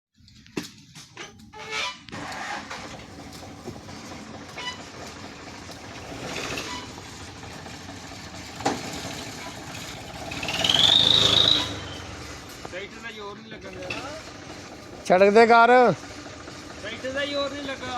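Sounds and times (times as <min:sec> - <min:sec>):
tractor engine running: 0:01.4 - 0:17.9
loud high-pitched squeal: 0:06.0 - 0:07.7, 0:08.6 - 0:14.5.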